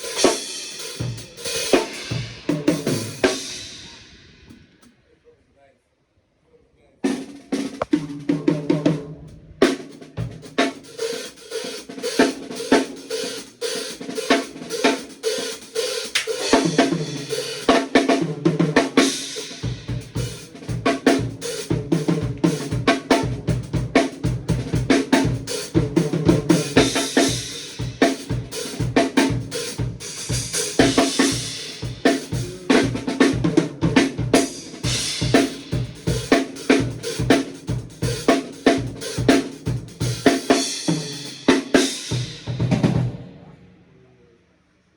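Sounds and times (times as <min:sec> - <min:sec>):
bass drum and snare beat: 0:00.0 - 0:04.7, 0:07.1 - 0:43.1
cymbals and hi-hat: 0:00.0 - 0:04.9, 0:09.6 - 0:43.0
drum fills: 0:00.0 - 0:04.9, 0:07.0 - 0:43.5.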